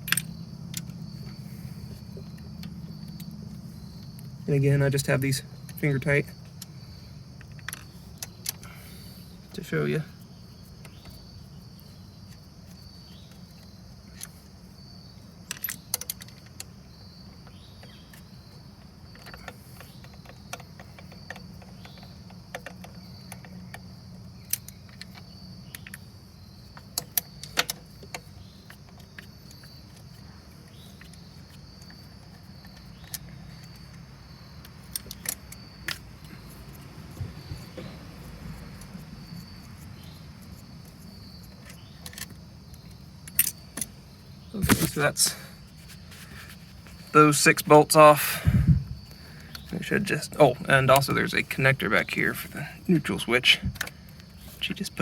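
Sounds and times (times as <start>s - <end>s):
crickets chirping: 0.0s - 55.0s
metallic clinks of bolts and tools: 38.8s - 43.9s.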